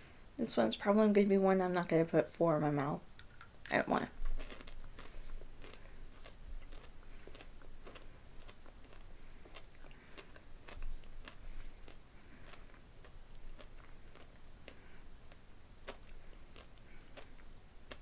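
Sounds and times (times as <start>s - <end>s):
person chewing candy crunches: 4.2s - 18.0s.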